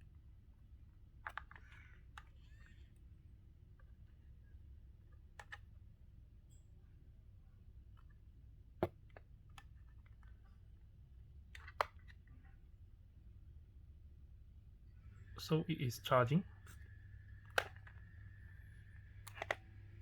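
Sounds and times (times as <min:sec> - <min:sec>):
faint low hum: 0:00.0 - 0:20.0
plastic clicks and taps: 0:01.2 - 0:02.9, 0:05.4 - 0:05.7, 0:08.8 - 0:10.4, 0:11.5 - 0:12.2, 0:17.4 - 0:18.2, 0:19.1 - 0:19.7.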